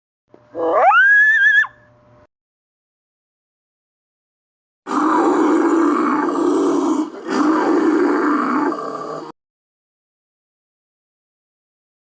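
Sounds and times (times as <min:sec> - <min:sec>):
rough growling roars: 0:04.9 - 0:09.4.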